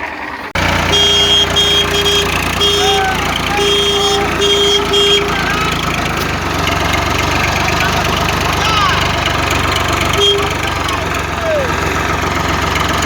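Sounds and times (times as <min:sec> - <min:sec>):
engine running: 0:00.0 - 0:13.0
electronic beeping tune: 0:00.9 - 0:05.5.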